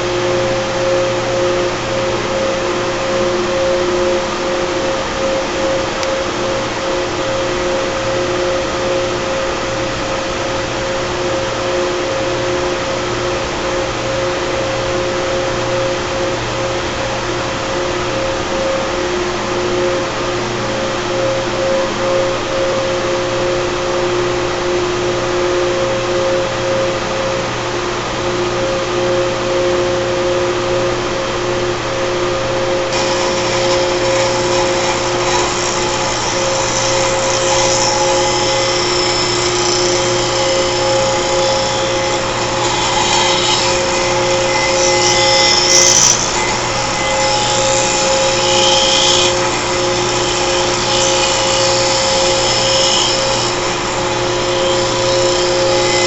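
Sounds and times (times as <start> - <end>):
screw compressors running: 32.9 - 56.0.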